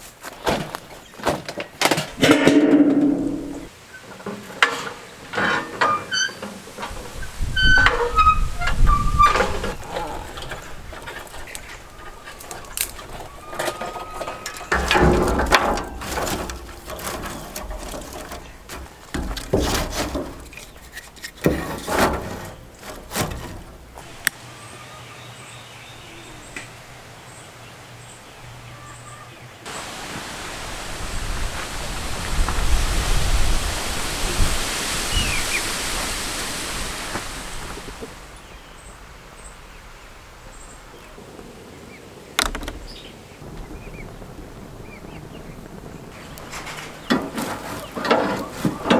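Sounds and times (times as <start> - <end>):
sharp knocks and clatters: 0.4 - 24.0, 46.1 - 48.9
steady grill hiss: 29.7 - 40.8.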